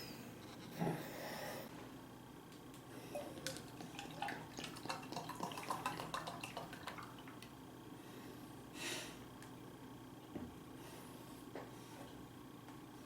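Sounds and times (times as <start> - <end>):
liquid clicks and drips: 2.7 - 7.6
liquid being poured: 3.2 - 7.6.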